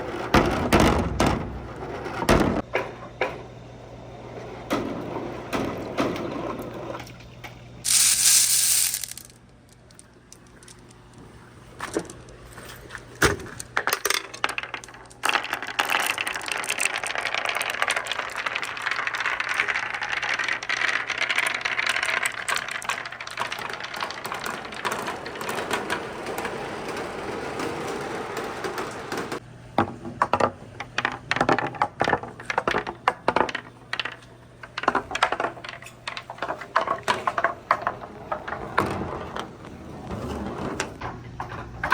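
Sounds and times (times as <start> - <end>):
marbles rolling on wooden track: 7.9 - 29.4, 31.0 - 41.9.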